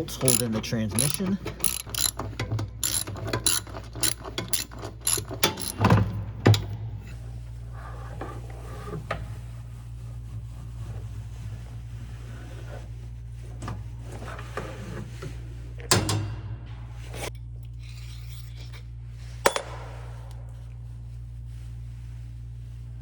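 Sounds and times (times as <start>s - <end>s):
socket ratchet clicking: 0.0s - 6.0s.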